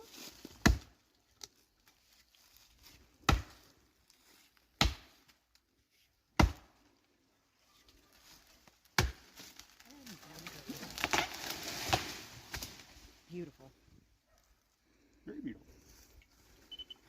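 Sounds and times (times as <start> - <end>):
axe chopping wood: 0.4 - 0.9, 3.2 - 3.6, 4.8 - 5.2, 6.4 - 6.8, 8.9 - 9.4, 10.9 - 12.7.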